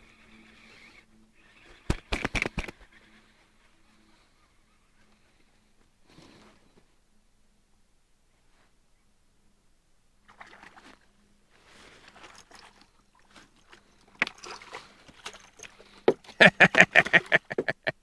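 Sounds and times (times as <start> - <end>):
water splashing against kayak: 10.3 - 11.0, 11.6 - 17.9.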